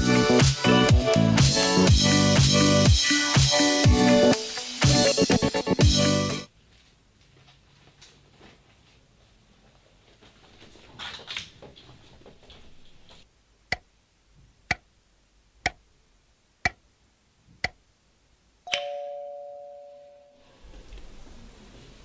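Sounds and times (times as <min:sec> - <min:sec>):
faint rustling: 0:06.6 - 0:13.3
bell-like ding: 0:18.7 - 0:20.4.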